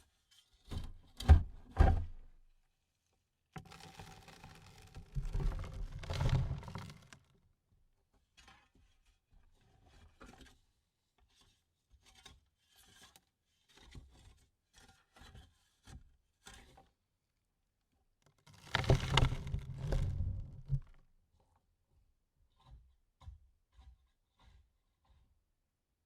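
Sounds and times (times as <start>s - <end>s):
soil falling on wooden lid: 18.6s - 21.0s
shovelful of soil pouring on wood: 18.7s - 20.8s.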